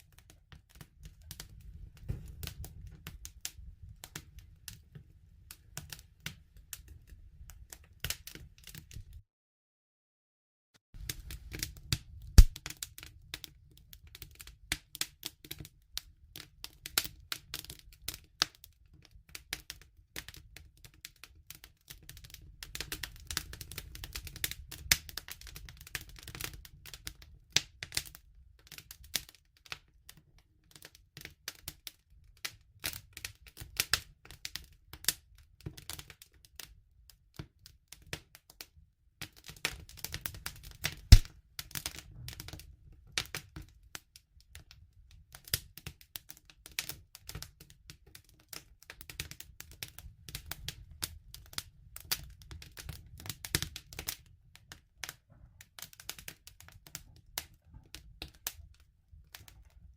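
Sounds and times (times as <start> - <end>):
wood fire crackling: 0.0 - 9.2, 11.0 - 36.7, 39.2 - 59.8
low rumble of flames: 0.6 - 9.2, 11.0 - 13.4, 40.2 - 43.0.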